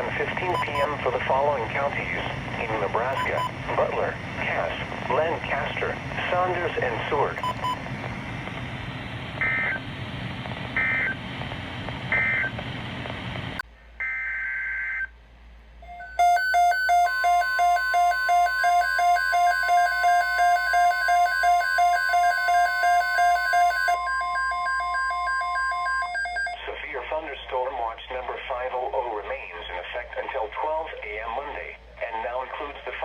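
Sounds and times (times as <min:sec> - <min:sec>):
pulsing electronic alarm beeping: 0:00.0 - 0:01.9, 0:03.0 - 0:03.6, 0:15.9 - 0:26.6
digital data tone bursts: 0:00.0 - 0:07.8
steady warning tone: 0:00.0 - 0:10.0, 0:10.7 - 0:13.0, 0:15.8 - 0:26.6
radio static: 0:00.0 - 0:13.6.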